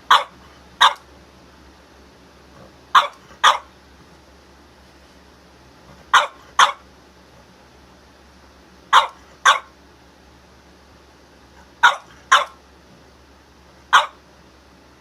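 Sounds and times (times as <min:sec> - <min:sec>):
dog barking sharply: 0:00.1 - 0:01.0, 0:03.0 - 0:03.7, 0:06.1 - 0:06.8, 0:08.9 - 0:09.7, 0:11.8 - 0:12.6, 0:13.9 - 0:14.2.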